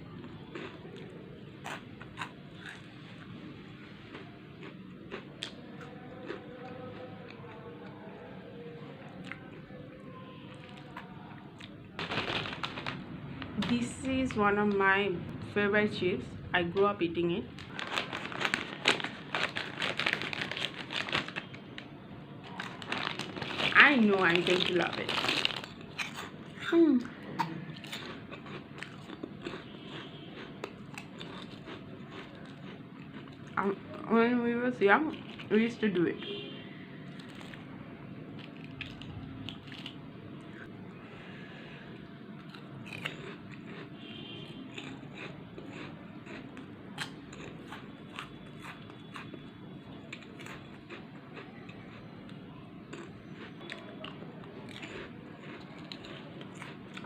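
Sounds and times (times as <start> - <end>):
person chewing crunchy chips: 0.0 - 3.4, 4.0 - 7.7, 10.5 - 13.6, 17.5 - 26.7, 27.3 - 33.6, 35.1 - 35.5, 37.1 - 37.7, 38.3 - 40.6, 41.9 - 57.0.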